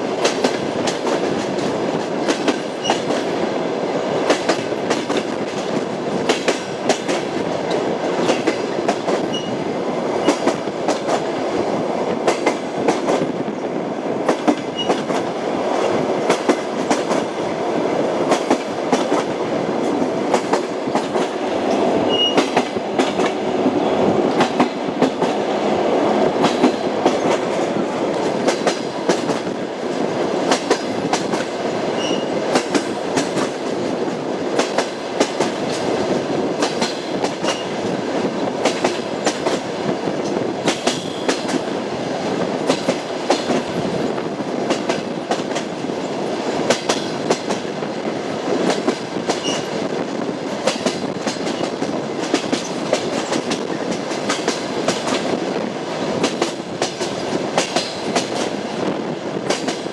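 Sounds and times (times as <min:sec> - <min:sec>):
train wheels clattering over rail joints: 0:00.1 - 0:03.4, 0:04.2 - 0:09.6, 0:10.2 - 0:11.4, 0:14.2 - 0:17.3, 0:18.2 - 0:23.5, 0:26.2 - 0:41.7, 0:42.3 - 0:58.8, 0:59.4 - 0:59.9
faint high squeaks: 0:32.0 - 0:32.3.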